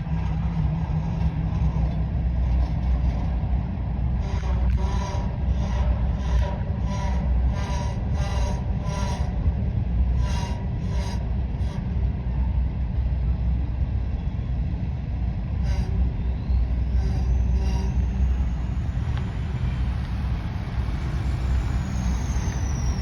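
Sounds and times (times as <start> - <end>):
freight cars rumbling past: 0.0 - 23.0
ringing wheel on rail: 0.0 - 23.0.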